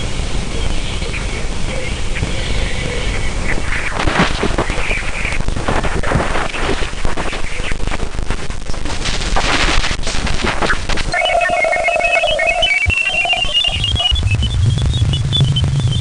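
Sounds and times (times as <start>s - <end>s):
dense crackling and popping: 0.0s - 16.0s
rapid high-pitched beeps: 11.1s - 16.0s
steady tone: 11.1s - 16.0s
low rumble: 12.2s - 16.0s.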